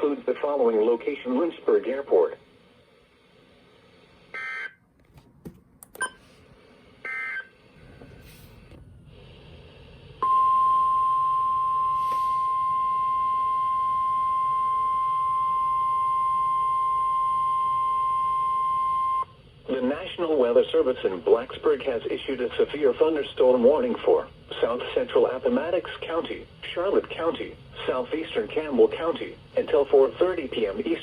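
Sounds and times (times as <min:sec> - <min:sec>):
faint radio static: 0:00.0 - 0:02.5, 0:19.6 - 0:31.0.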